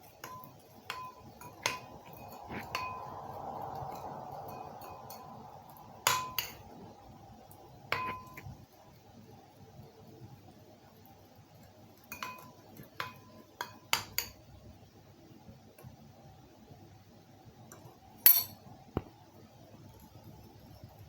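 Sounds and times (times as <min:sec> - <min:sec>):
spoon clinking against a dish: 0:00.0 - 0:03.0, 0:06.0 - 0:06.6, 0:07.9 - 0:08.5, 0:12.0 - 0:14.4, 0:18.2 - 0:18.6.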